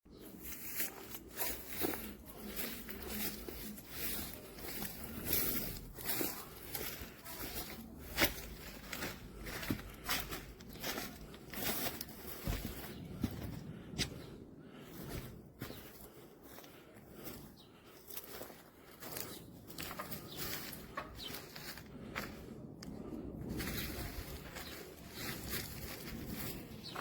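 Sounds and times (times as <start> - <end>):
rustling and crinkling handling noise: 0.1 - 27.0.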